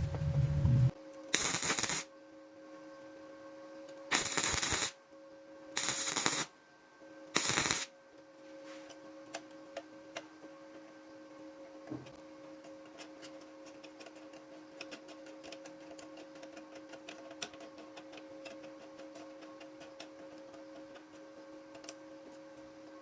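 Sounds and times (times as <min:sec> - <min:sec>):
loud low rumble: 0:00.0 - 0:00.9
steady motor hum: 0:00.0 - 0:06.4.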